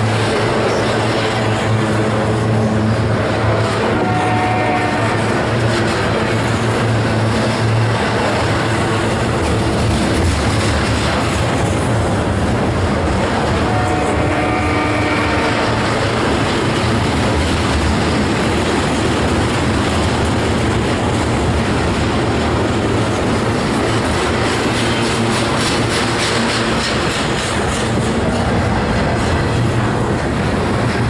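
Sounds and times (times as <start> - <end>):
train wheels rattling on rail: 0.0 - 31.0.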